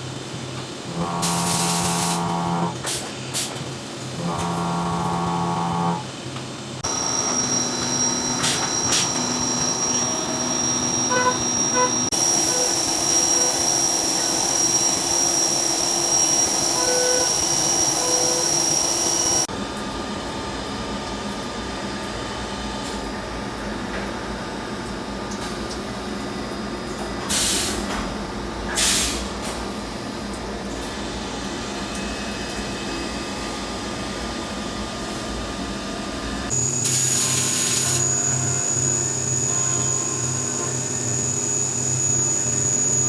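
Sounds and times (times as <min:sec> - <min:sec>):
high machine whine: 0:00.7 - 0:03.0, 0:04.0 - 0:19.5, 0:36.5 - 0:43.0
low machine hum: 0:00.8 - 0:02.9, 0:04.0 - 0:12.7.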